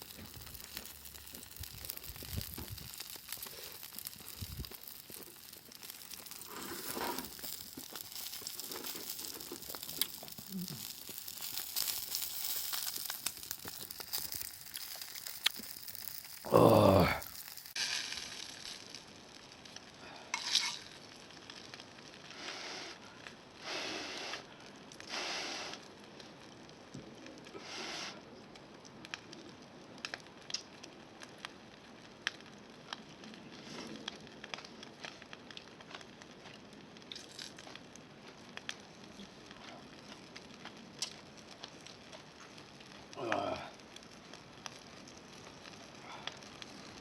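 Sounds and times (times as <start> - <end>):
food sizzling in a pan: 0.0 - 21.5
campfire crackling: 0.0 - 47.0.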